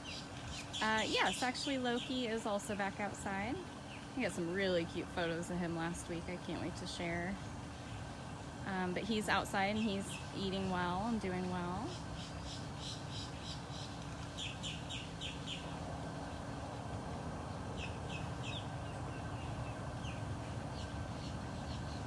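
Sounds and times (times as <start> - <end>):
outdoor background hiss: 0.0 - 22.0
small bird chirping: 11.8 - 15.8.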